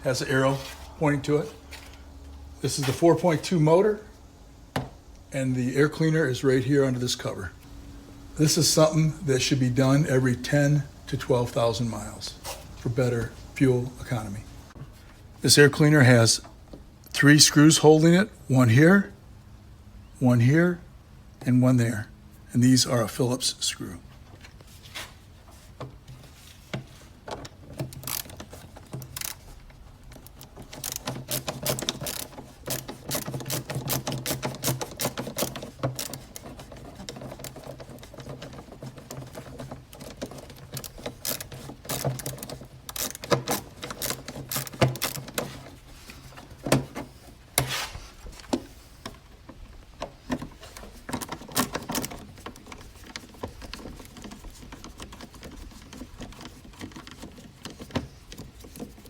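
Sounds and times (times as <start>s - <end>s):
screwdriver ratchet clicks: 27.9s - 28.4s, 40.7s - 45.4s.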